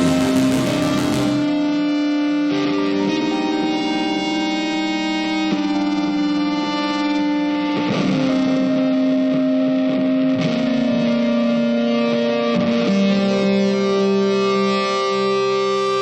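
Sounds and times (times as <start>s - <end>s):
electric guitar music: 0.0s - 16.0s.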